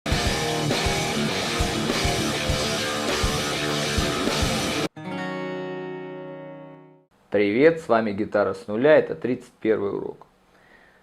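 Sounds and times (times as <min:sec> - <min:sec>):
rock music with drums and guitar: 0:00.1 - 0:04.9
ringing guitar chord: 0:00.2 - 0:07.1.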